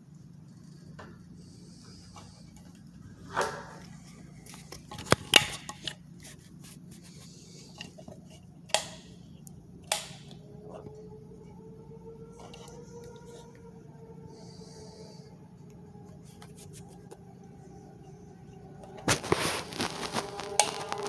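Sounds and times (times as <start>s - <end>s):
low steady hum: 0.0s - 21.0s
clicks and knocks of handled objects: 4.4s - 6.8s, 7.7s - 9.2s.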